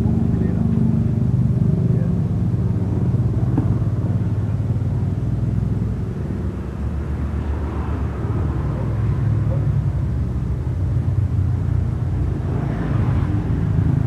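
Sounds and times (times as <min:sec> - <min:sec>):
motorcycle engine running: 0:00.0 - 0:07.1.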